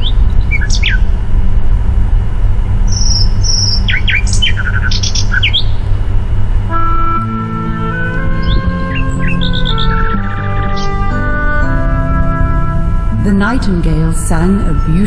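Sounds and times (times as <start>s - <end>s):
birds chirping and whistling: 0.0s - 1.1s, 2.9s - 5.9s, 7.7s - 12.9s
steady low hum: 0.0s - 15.0s.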